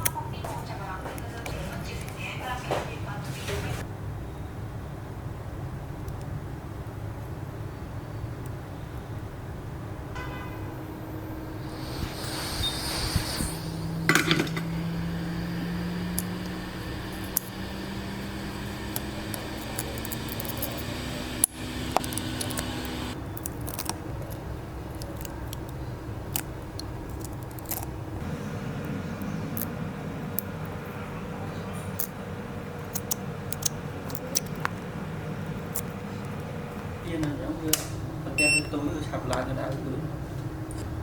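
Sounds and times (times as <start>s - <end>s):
low hum rising in pitch: 10.7s - 23.2s.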